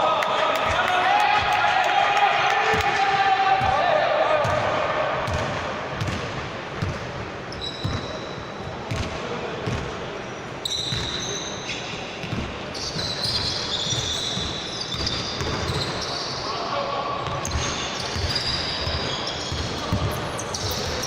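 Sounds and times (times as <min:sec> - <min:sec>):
basketball bouncing on court: 0:04.4 - 0:07.2, 0:07.8 - 0:08.2, 0:08.8 - 0:10.0, 0:10.9 - 0:11.3, 0:12.2 - 0:16.0, 0:17.4 - 0:21.0.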